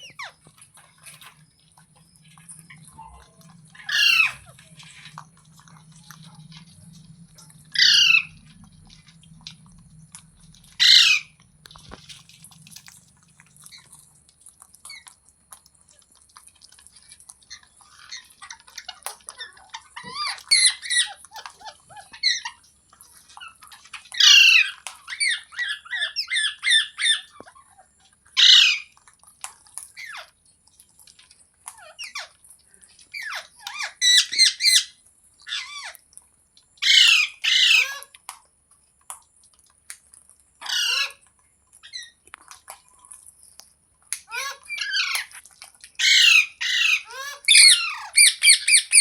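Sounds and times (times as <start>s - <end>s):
parrot squawking and chattering: 0.0s - 1.4s, 2.3s - 5.3s, 6.2s - 9.6s, 10.6s - 12.1s, 13.6s - 14.0s, 17.0s - 29.0s, 29.9s - 30.4s, 31.7s - 32.4s, 33.1s - 36.0s, 36.8s - 38.2s, 40.6s - 42.2s, 44.1s - 49.0s.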